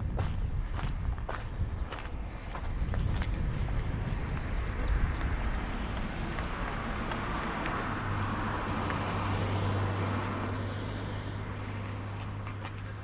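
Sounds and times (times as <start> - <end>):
low engine hum: 0.0 - 13.0
vehicle passing: 2.2 - 13.0.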